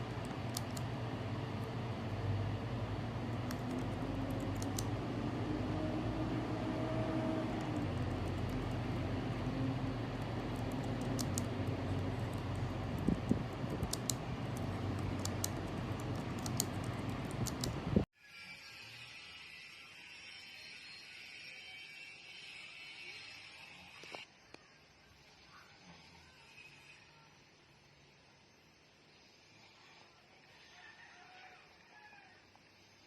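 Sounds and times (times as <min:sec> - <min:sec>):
sharp clicks: 0:00.0 - 0:01.0, 0:03.2 - 0:05.0, 0:10.1 - 0:17.8
steady low hum: 0:00.0 - 0:18.1.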